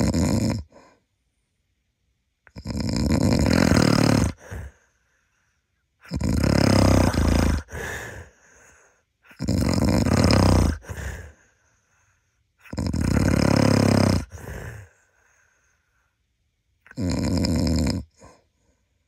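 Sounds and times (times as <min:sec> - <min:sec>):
man snoring: 0:00.0 - 0:01.0, 0:02.5 - 0:04.9, 0:06.0 - 0:11.4, 0:12.6 - 0:15.0, 0:16.9 - 0:18.4
quiet breath: 0:00.6 - 0:01.6, 0:04.3 - 0:06.0, 0:07.0 - 0:09.4, 0:10.7 - 0:12.7, 0:14.1 - 0:16.9, 0:18.1 - 0:19.0.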